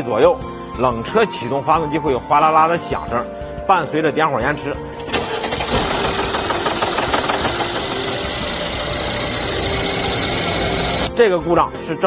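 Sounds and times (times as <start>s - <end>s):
fast engine rattle: 5.1s - 11.1s
car engine running: 5.5s - 11.1s.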